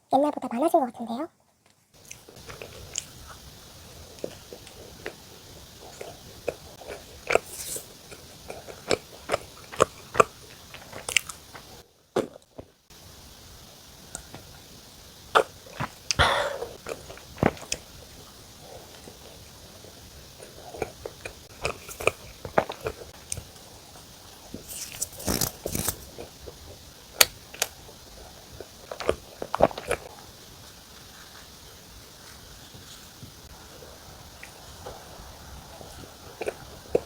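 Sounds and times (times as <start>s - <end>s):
mouth clicks and smacks: 2.0s - 12.5s
biting and chewing bread: 2.0s - 13.3s, 15.3s - 37.0s.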